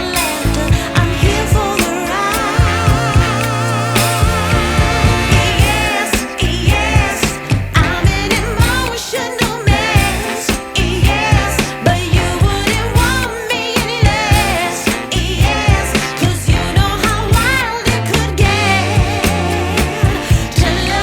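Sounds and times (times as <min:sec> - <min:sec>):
ornamented singing voice: 0:00.0 - 0:21.0
steady beat: 0:00.6 - 0:08.9.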